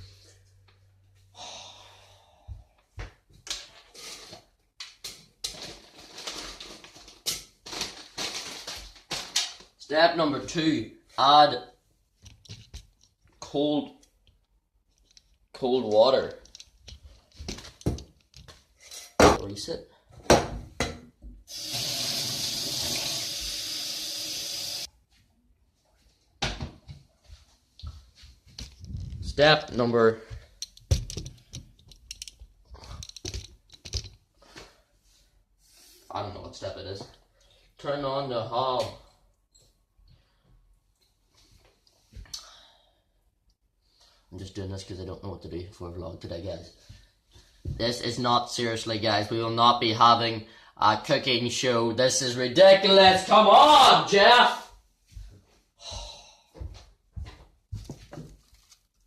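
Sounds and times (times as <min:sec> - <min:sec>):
tap water running into saucepan: 0:21.5 - 0:24.9.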